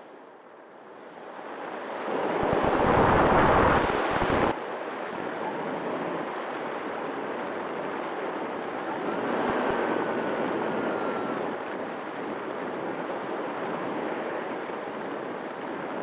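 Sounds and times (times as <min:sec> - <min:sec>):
wind rushing over microphone: 0:01.5 - 0:16.0.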